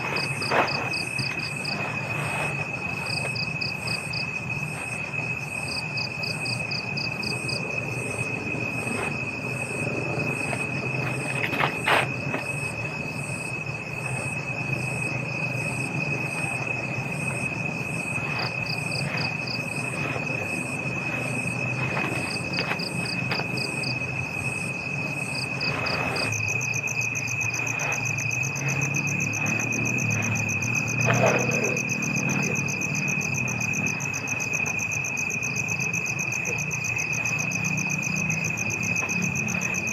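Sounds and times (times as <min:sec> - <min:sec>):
insects chirring: 0:00.0 - 0:39.9.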